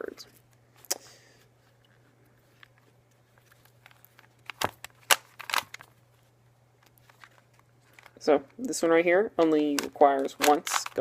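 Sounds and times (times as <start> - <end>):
low steady hum: 0.0 - 11.0
plastic cube clicking and rattling: 3.8 - 5.9, 9.4 - 11.0.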